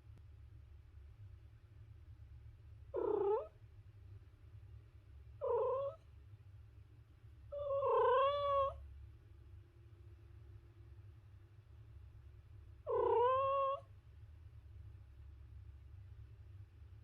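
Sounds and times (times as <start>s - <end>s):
steady low hum: 0.0s - 17.0s
cat meowing: 5.4s - 6.0s, 7.5s - 8.8s, 12.9s - 13.9s.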